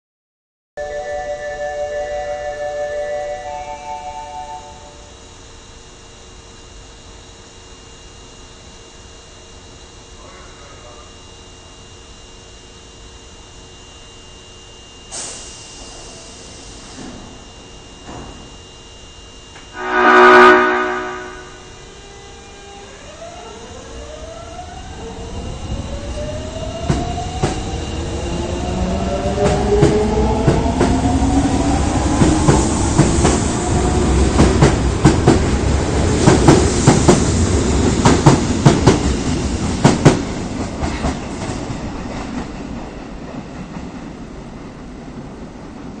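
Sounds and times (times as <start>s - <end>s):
train horn: 1.4s - 5.1s, 19.7s - 22.9s
train motor whine: 14.6s - 40.5s.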